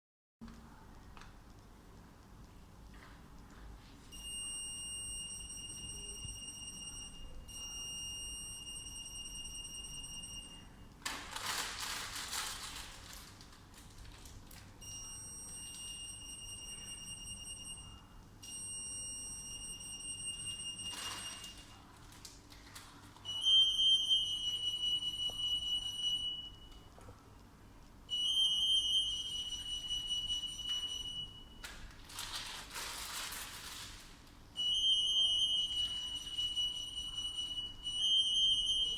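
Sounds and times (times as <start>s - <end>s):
high-pitched alarm tone: 23.3s - 26.8s, 28.1s - 31.6s, 34.6s - 38.9s.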